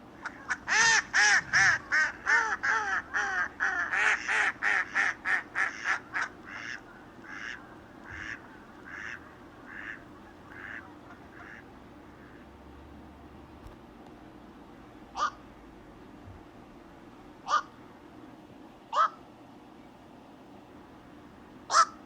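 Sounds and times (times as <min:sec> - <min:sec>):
bird calling: 0:00.0 - 0:12.5, 0:15.2 - 0:15.4, 0:17.4 - 0:17.8, 0:18.9 - 0:19.2, 0:21.7 - 0:22.0.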